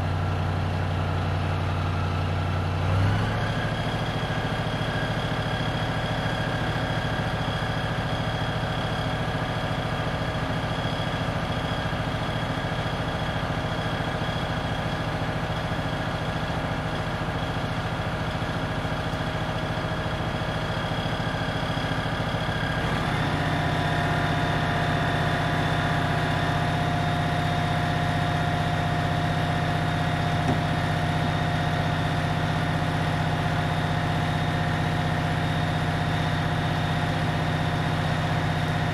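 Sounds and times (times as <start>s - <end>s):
fire engine idling: 0.0s - 38.9s
higher engine whine: 21.7s - 36.6s.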